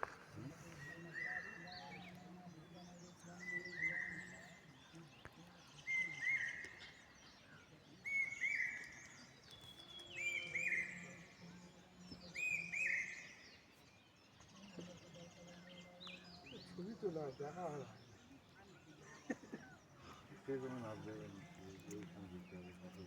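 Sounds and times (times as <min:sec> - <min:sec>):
faint bird chirps: 0:00.0 - 0:23.0
bird song with held whistle: 0:08.1 - 0:11.4, 0:12.3 - 0:13.5.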